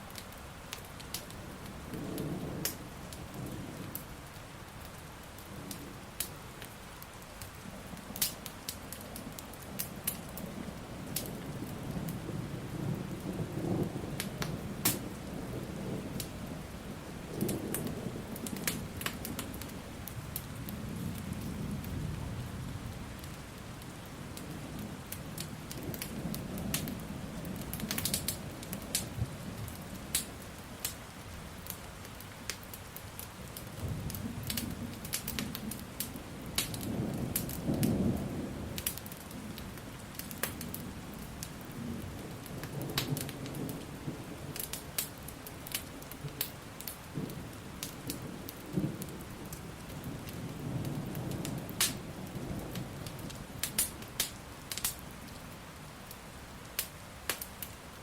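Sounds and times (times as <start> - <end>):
steady rain: 0.0 - 58.0
wood fire crackling: 0.0 - 58.0
thunder rumbling: 10.5 - 23.5, 33.7 - 46.4, 47.0 - 55.3.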